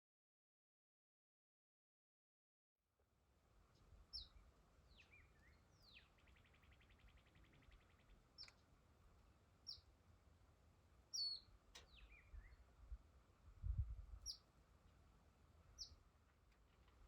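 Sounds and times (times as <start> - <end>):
songbirds chirping: 3.4 - 17.0.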